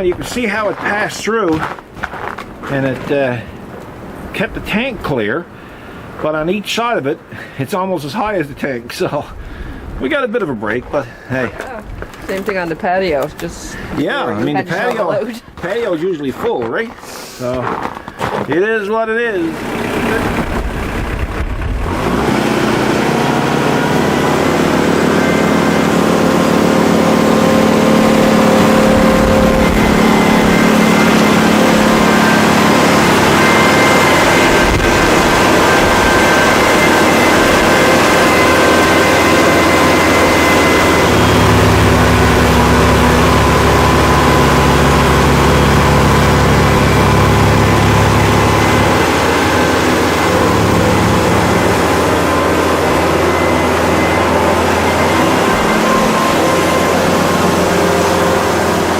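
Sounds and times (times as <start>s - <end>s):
tractor diesel engine running: 17.4s - 58.9s.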